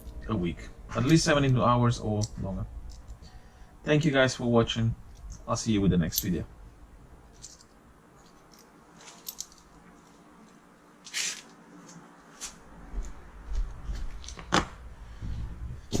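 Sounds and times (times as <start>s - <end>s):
handling rustles: 7.2s - 12.6s.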